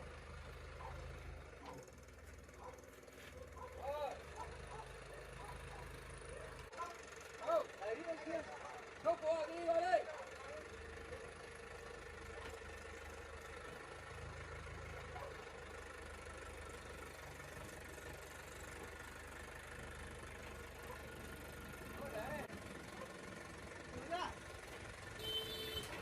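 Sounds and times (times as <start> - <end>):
vehicle engine idling: 0.0 - 26.0.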